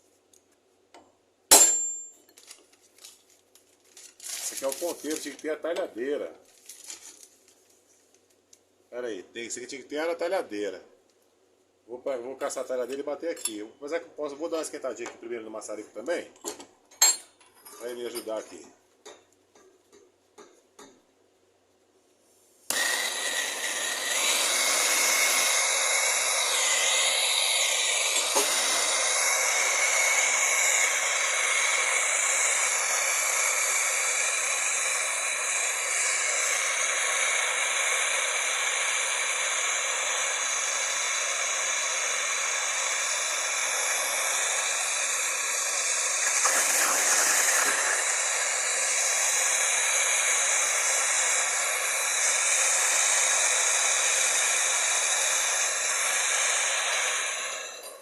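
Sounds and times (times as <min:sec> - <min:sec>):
blowtorch hissing: 0:22.7 - 0:58.0.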